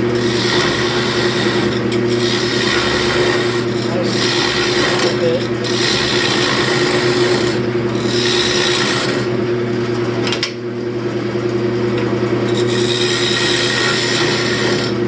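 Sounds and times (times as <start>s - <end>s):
turning tool scraping wood: 0.0s - 9.4s, 12.4s - 15.0s
wood lathe running: 0.0s - 9.8s, 12.4s - 15.0s.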